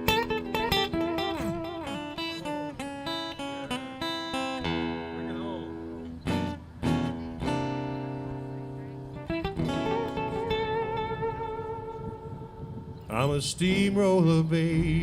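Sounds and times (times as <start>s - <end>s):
acoustic guitar picking and strumming: 0.0s - 15.0s
sustained bass: 4.6s - 15.0s.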